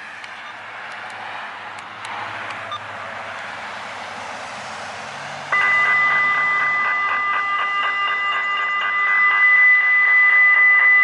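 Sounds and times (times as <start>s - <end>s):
electronic alert tone: 5.6s - 11.0s.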